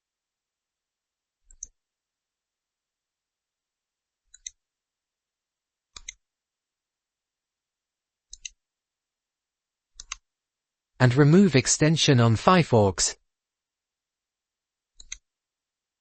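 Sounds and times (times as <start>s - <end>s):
faint computer mouse clicks: 1.5s - 1.8s, 4.3s - 4.6s, 6.0s - 6.2s, 8.3s - 8.6s, 10.0s - 10.2s, 15.0s - 15.2s.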